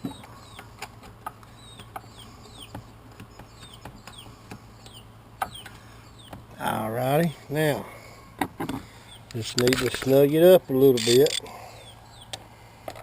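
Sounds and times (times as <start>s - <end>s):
small bird chirping: 0.0s - 6.5s, 11.0s - 12.4s
bolt clicking as turned by hand: 11.0s - 11.4s.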